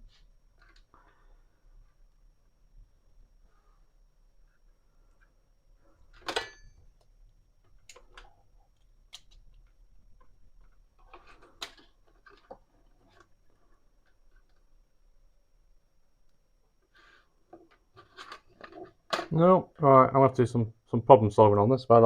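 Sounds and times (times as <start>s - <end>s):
faint high whine: 0.0s - 11.6s.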